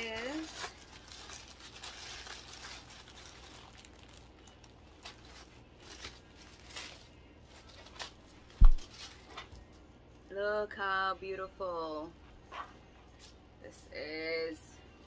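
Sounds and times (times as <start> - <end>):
packaging crinkling: 0.0 - 9.8
low steady hum: 0.0 - 15.0
fabric rustling: 7.9 - 9.3.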